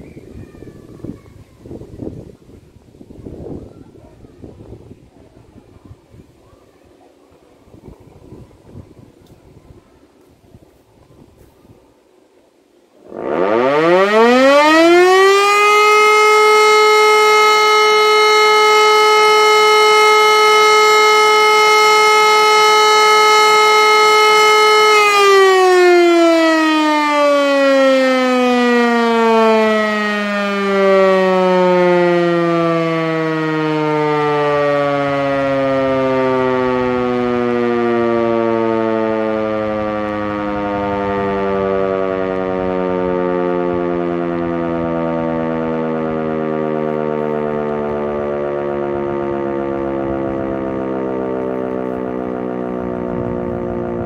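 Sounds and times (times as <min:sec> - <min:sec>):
civil defence siren: 0:13.0 - 0:54.0.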